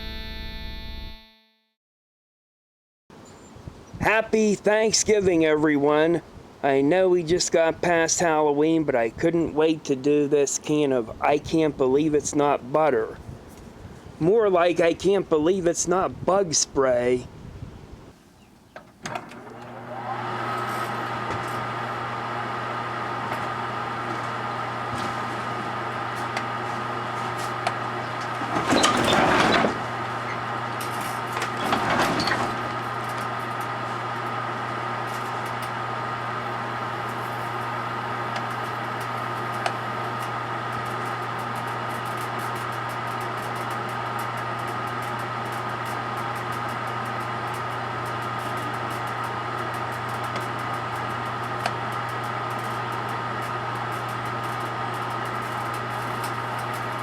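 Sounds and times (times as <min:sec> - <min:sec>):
microwave oven humming: 0:00.0 - 0:01.2, 0:18.7 - 0:57.0.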